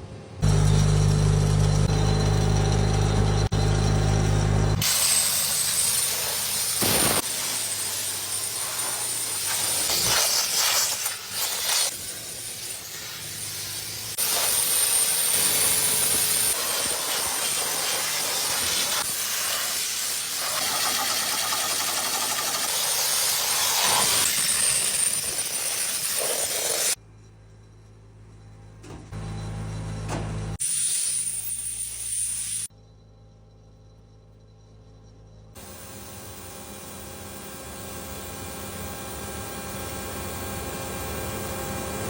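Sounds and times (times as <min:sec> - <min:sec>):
engine running: 0:00.0 - 0:08.2
hissing cleaning spray jet: 0:04.8 - 0:27.0.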